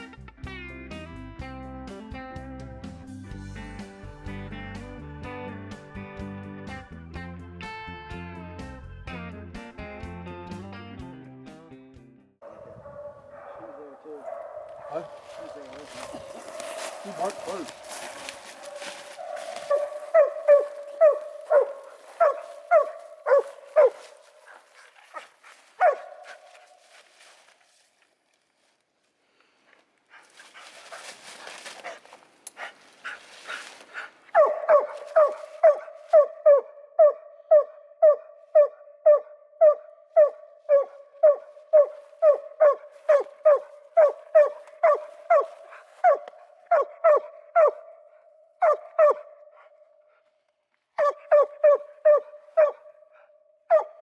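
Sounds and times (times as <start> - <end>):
dog barking: 12.4 - 26.9, 30.4 - 50.2, 51.0 - 54.0.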